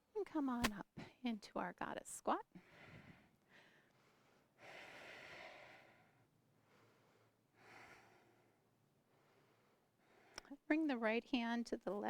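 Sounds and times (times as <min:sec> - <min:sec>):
woman breathing softly: 0:02.6 - 0:10.5.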